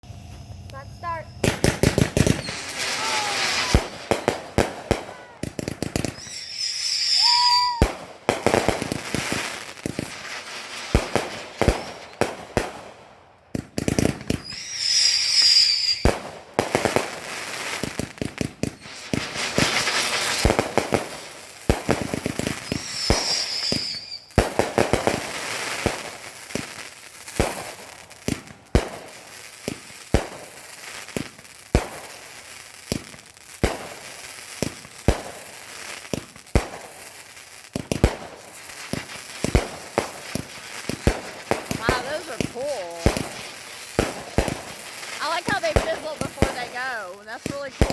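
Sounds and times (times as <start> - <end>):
fireworks fizzing and hissing: 0.0 - 47.9
firecracker bangs: 0.1 - 26.7, 37.7 - 47.9
short high whistle: 6.2 - 7.8, 14.4 - 16.0.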